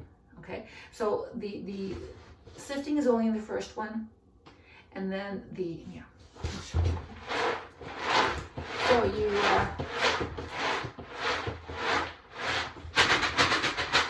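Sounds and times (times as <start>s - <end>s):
cat litter shaken in sifting box: 7.0s - 14.0s.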